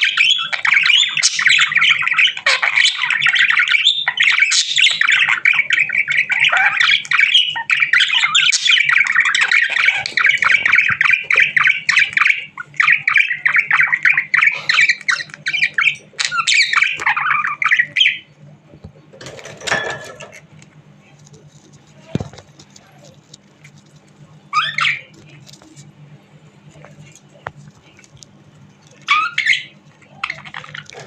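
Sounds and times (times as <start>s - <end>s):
budgerigar warbling and chattering: 0.0s - 18.4s, 24.5s - 25.2s, 28.9s - 31.0s.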